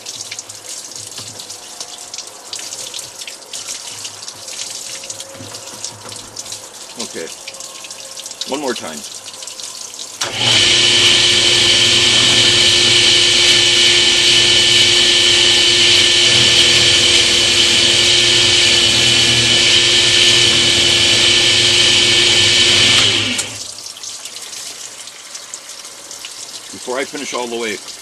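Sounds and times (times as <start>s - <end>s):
drill boring through stone tile: 10.2s - 23.6s.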